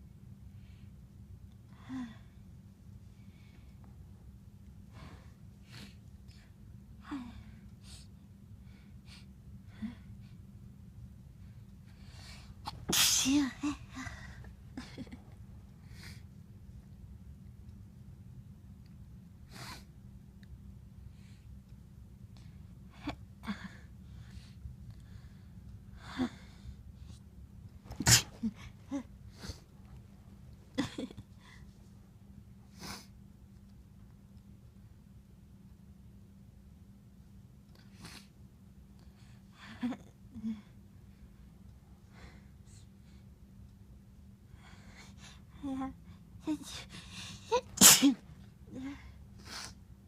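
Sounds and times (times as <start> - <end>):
person sneezing: 12.7 - 13.8, 27.9 - 28.6, 47.6 - 48.2
hitching breaths before sneeze: 27.8 - 29.7.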